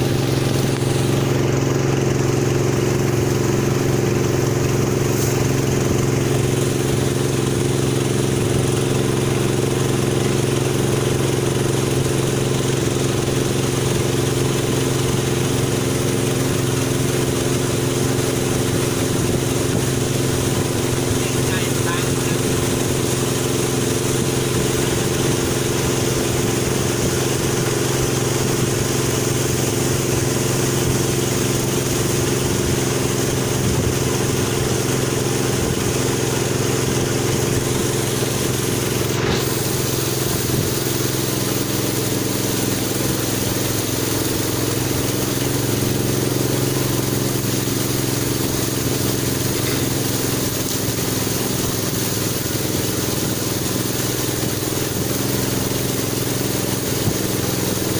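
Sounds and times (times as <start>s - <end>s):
boat engine running: 0.0s - 57.9s
rushing hiss: 37.4s - 57.9s.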